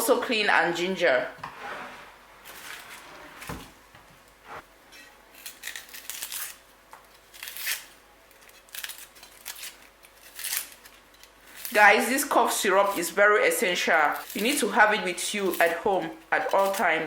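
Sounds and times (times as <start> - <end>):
onion skin crackling and tearing: 5.3 - 17.0.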